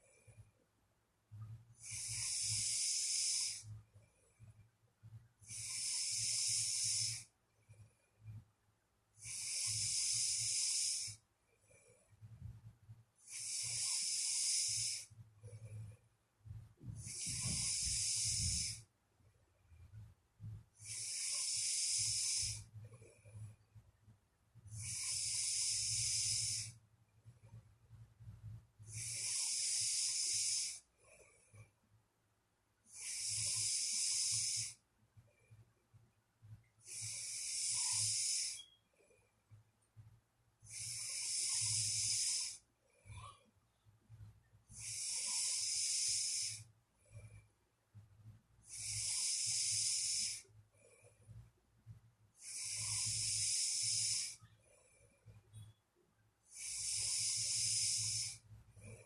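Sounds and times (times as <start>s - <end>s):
person snoring: 1.8s - 3.7s, 5.4s - 7.3s, 9.2s - 11.2s, 13.2s - 15.1s, 16.8s - 18.8s, 20.8s - 22.7s, 24.7s - 26.8s, 28.9s - 30.8s, 32.9s - 34.8s, 36.8s - 38.6s, 40.7s - 42.6s, 44.7s - 46.7s, 48.7s - 50.4s, 52.4s - 54.4s, 56.5s - 59.0s.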